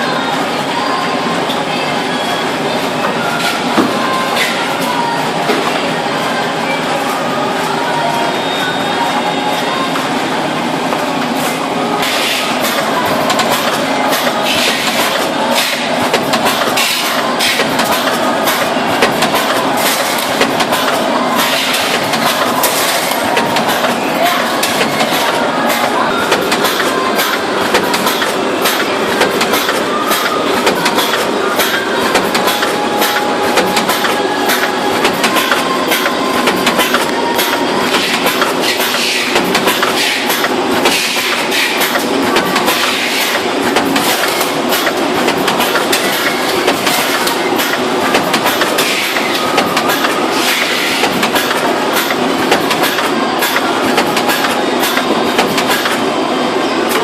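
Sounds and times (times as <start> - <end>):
sharp machine clacks: 11.4 - 56.2.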